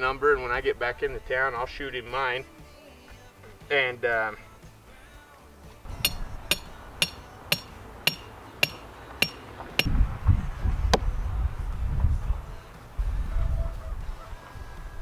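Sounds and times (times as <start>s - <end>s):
low rumble: 5.8s - 14.3s
hammer striking tent stakes: 5.9s - 10.0s.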